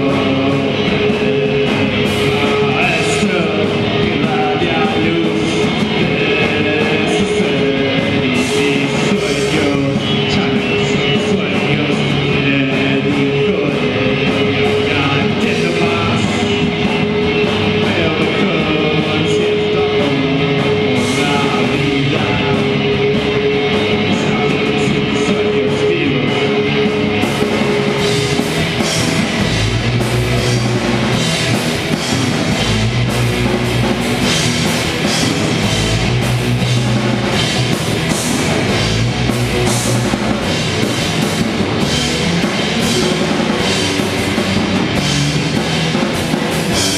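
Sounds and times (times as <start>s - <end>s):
cymbals and heavy drum hits: 0.0s - 46.9s
electric guitar: 0.0s - 46.9s.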